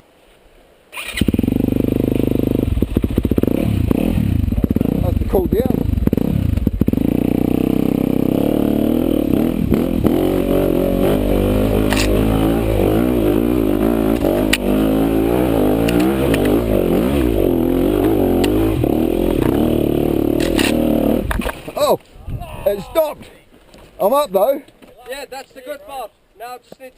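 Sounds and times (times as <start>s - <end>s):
dirt bike engine revving: 1.0s - 21.5s.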